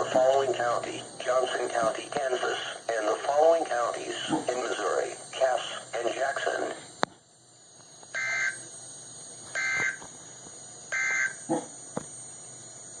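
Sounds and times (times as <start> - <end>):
two-tone digital squawks: 8.2 - 8.6, 9.6 - 10.0, 10.9 - 11.4.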